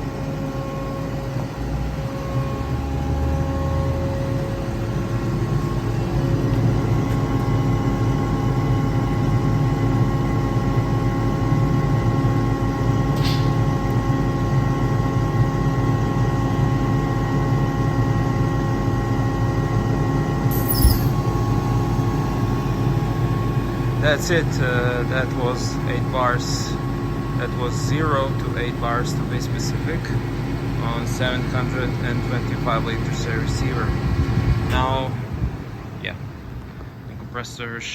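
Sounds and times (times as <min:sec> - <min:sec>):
air compressor humming: 0:20.4 - 0:37.0.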